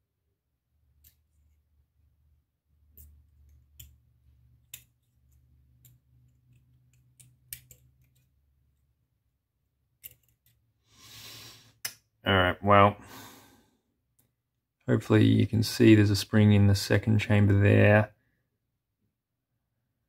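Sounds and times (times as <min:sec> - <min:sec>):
metallic clicks of small parts: 0:00.9 - 0:01.6, 0:02.9 - 0:08.9, 0:09.9 - 0:10.7.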